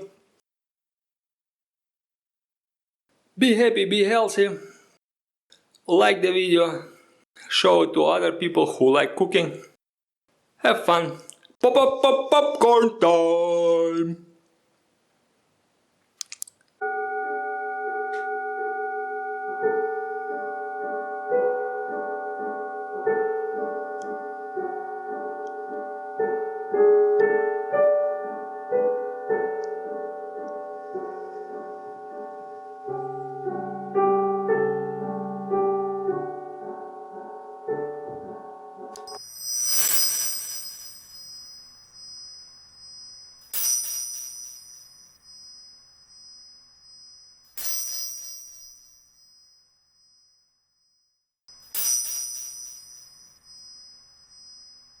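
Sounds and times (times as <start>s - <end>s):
piano playing sustained notes: 16.8s - 39.2s
bell-like chimes ringing: 36.9s - 50.4s, 51.5s - 55.0s.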